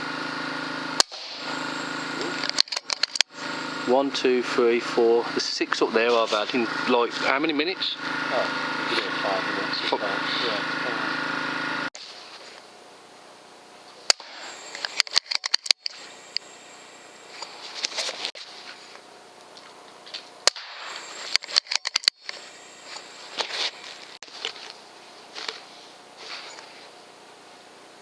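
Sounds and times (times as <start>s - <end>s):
metallic clicks of rifle action: 2.4s - 3.3s, 14.8s - 16.0s, 21.2s - 22.4s
air rifle cracks: 20.4s - 22.4s.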